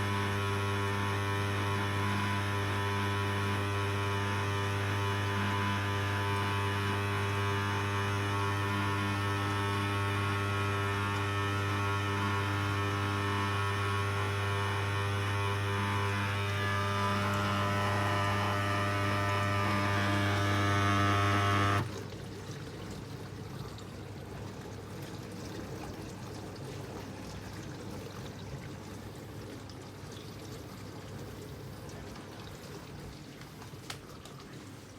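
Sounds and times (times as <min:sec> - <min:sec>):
dishwasher pump humming: 0:00.0 - 0:34.9
water trickling and sloshing: 0:21.8 - 0:34.9.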